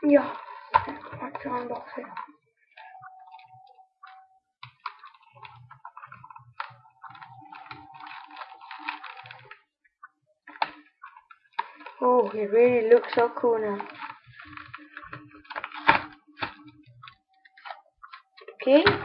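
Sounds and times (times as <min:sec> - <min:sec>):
plastic blister packaging crackling: 0:00.0 - 0:19.0
faint steady tone: 0:01.2 - 0:12.2.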